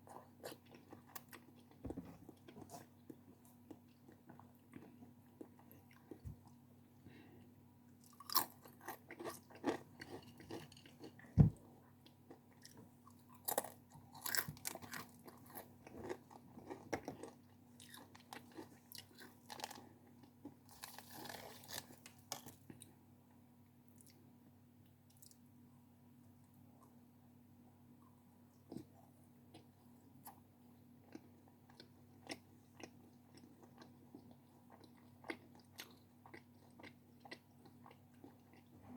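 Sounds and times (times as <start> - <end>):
person chewing crunchy snack: 8.0 - 11.2, 12.3 - 22.9, 31.1 - 38.7.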